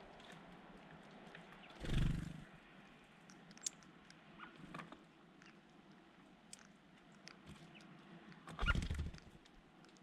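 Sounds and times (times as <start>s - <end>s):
small ticks: 2.8s - 10.0s.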